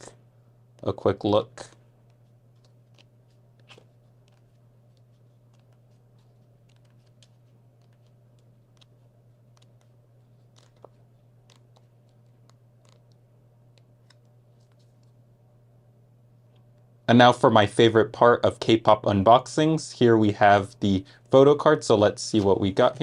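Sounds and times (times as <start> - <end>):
steady low hum: 0.0 - 23.0
pages flipping: 1.6 - 15.2.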